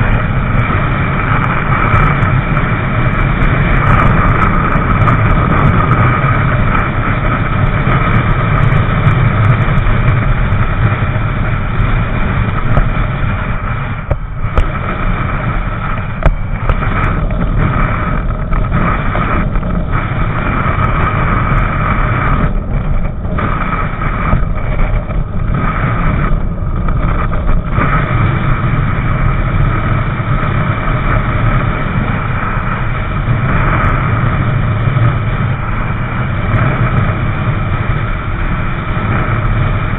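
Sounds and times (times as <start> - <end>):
motorcycle engine drone: 0.0 - 39.9
wind rushing on microphone: 0.0 - 39.9.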